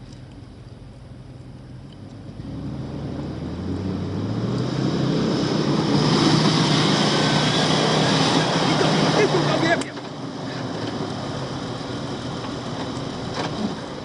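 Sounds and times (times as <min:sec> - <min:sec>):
car engine revving: 0:02.1 - 0:14.0.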